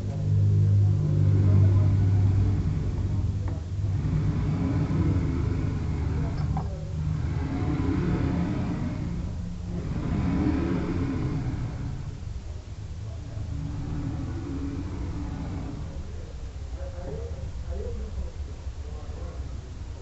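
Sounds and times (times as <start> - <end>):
cnc router motors humming: 0.0 - 20.0.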